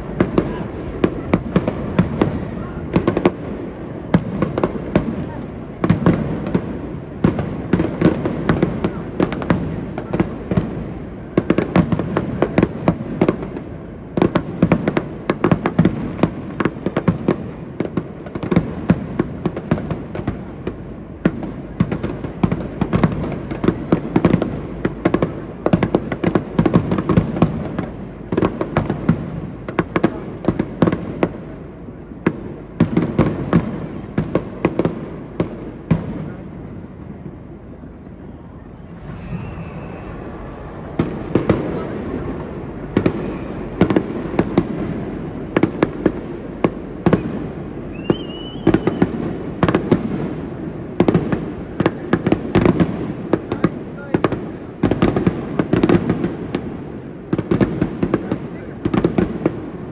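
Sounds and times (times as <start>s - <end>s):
fireworks bangs and crackles: 0.0s - 59.9s
low booms: 36.0s - 48.3s.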